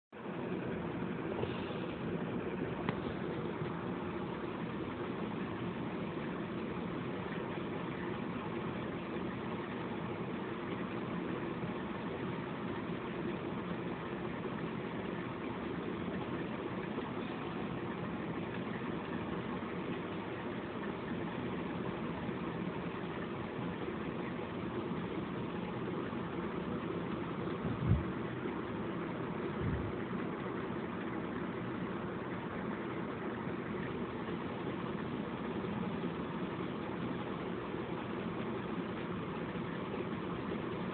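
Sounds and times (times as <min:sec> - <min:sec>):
electric fan running: 0:00.1 - 0:40.9.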